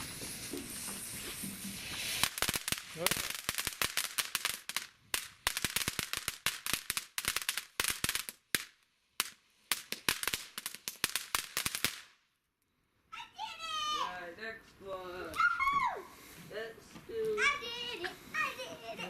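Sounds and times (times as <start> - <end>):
firework crackling: 0.0 - 12.3, 17.2 - 19.0.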